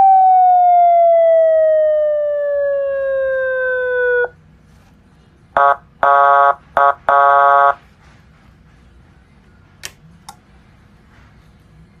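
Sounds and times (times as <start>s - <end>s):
electronic siren horn blasts: 2.1s - 4.3s, 5.6s - 7.8s.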